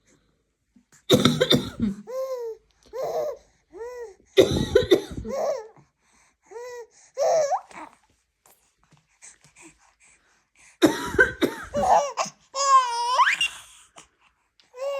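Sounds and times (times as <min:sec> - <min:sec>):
woman coughing: 0:01.1 - 0:02.0, 0:04.4 - 0:05.4, 0:10.8 - 0:12.1
baby giggling and squealing: 0:07.2 - 0:07.9, 0:11.7 - 0:13.8.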